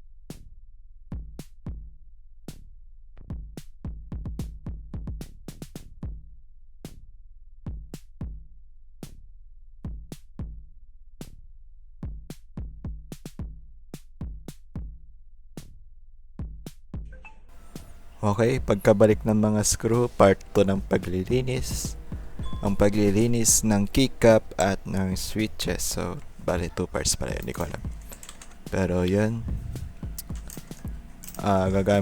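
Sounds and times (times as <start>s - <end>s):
electronic music with drum-machine beat: 17.2s - 32.0s.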